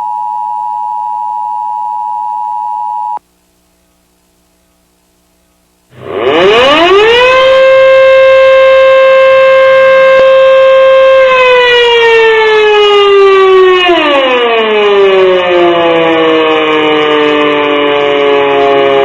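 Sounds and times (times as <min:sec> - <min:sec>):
siren wailing: 0:06.0 - 0:19.0.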